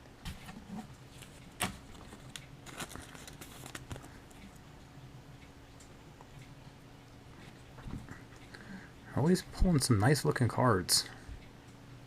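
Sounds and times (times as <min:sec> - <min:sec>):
trading cards handled and flipped: 0:01.2 - 0:04.1.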